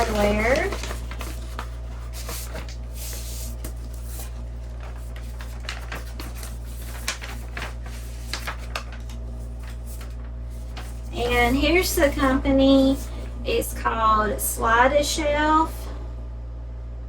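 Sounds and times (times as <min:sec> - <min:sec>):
packaging rustling: 0:00.0 - 0:13.4
steady low hum: 0:00.0 - 0:17.0.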